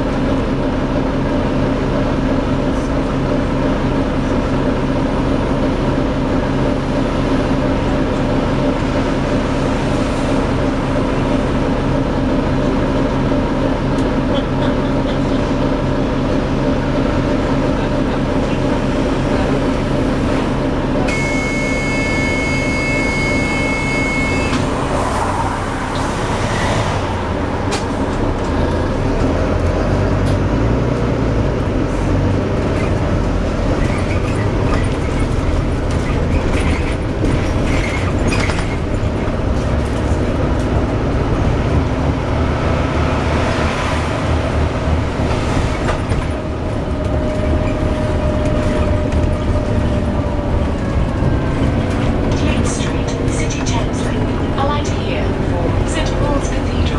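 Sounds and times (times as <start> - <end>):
bus engine drone: 0.0 - 56.9
high steady tone: 21.1 - 25.0
noisy axle: 23.9 - 56.9.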